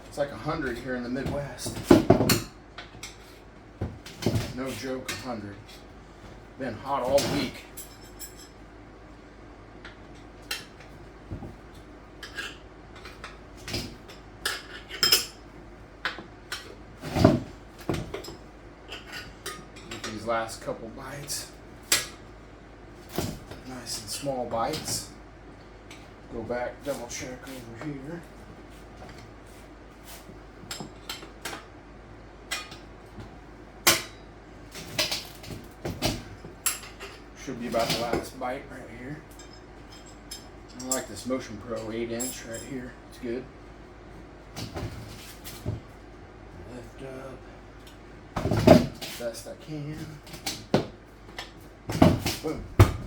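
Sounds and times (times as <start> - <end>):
metal tire spoons clinking on rim: 39.3 - 41.2, 41.8 - 42.9.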